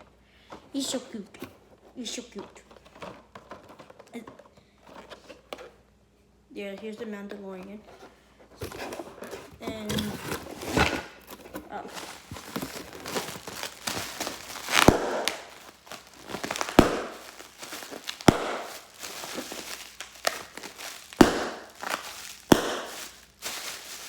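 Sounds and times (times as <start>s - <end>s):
packaging rustling and crinkling: 8.6s - 24.0s
sharp knocks of boxes: 12.4s - 23.2s.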